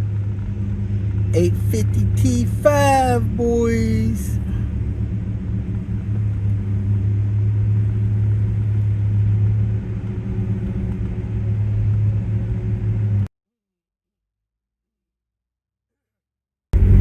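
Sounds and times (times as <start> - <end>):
car engine humming: 0.0 - 13.3.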